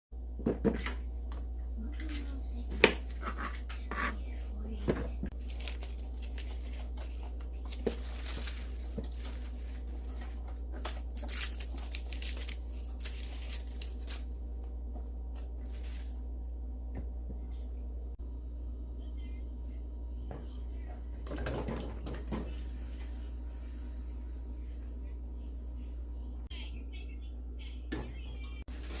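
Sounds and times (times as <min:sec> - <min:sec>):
steady low hum: 0:00.2 - 0:29.0
rustling and tearing handling: 0:05.3 - 0:14.6, 0:15.5 - 0:16.2.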